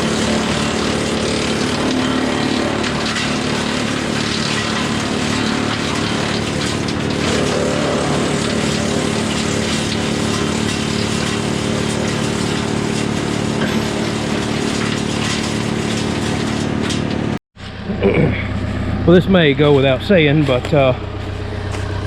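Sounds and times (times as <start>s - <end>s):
tractor diesel engine: 0.0s - 22.0s
wood chipper running: 0.0s - 22.0s.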